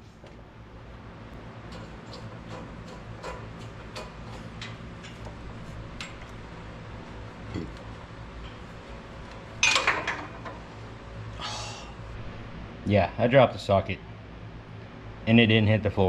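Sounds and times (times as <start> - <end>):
metal socket clattering off metal: 9.6 - 10.3.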